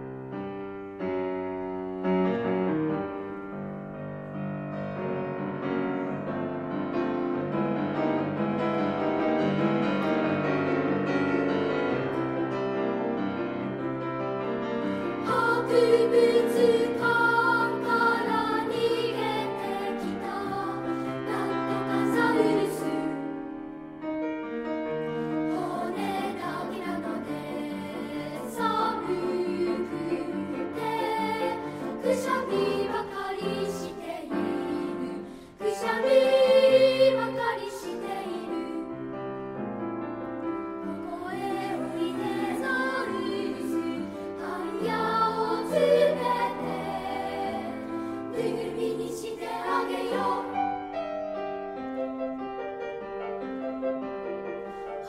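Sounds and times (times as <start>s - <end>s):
children's choir singing: 15.0s - 23.6s, 25.2s - 39.0s, 40.8s - 51.1s.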